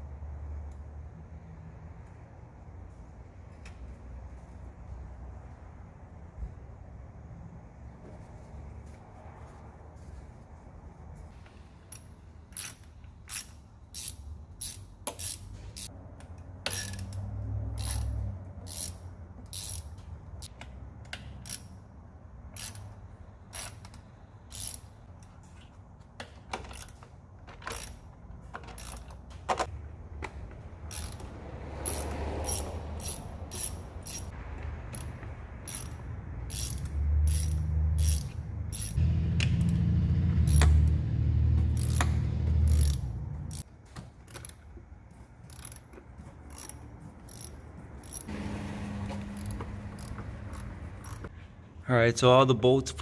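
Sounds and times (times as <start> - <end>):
hand ratchet clicking: 11.9 - 21.8, 22.4 - 25.4, 26.5 - 29.7, 30.8 - 39.6, 40.5 - 40.9, 41.6 - 48.3, 49.3 - 51.3.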